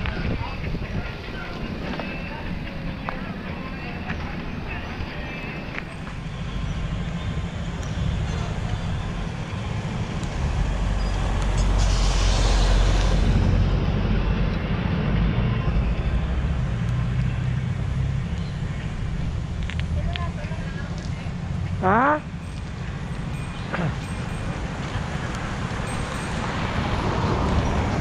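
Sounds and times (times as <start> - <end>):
wind rumble on microphone: 0.0 - 28.0
passing motor vehicle hiss: 9.8 - 15.2.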